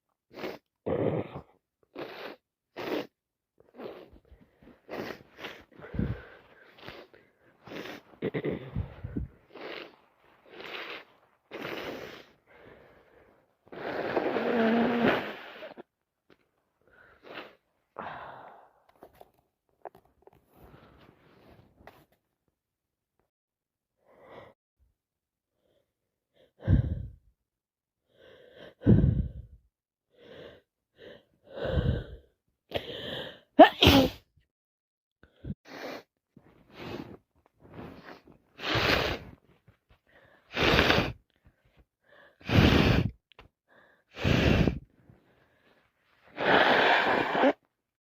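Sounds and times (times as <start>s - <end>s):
person sneezing: 33.6s - 34.3s, 46.4s - 47.6s.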